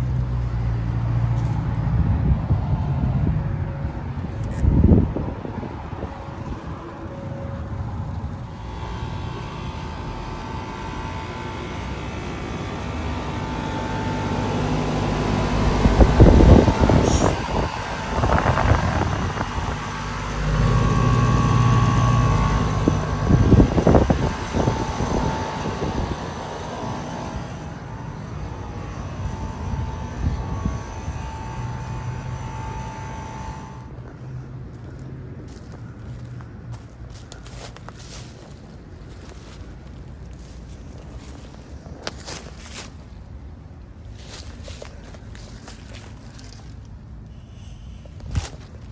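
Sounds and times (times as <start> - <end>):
loud rough rush of low noise: 0.0 - 35.8
air-conditioner unit humming: 4.1 - 34.2.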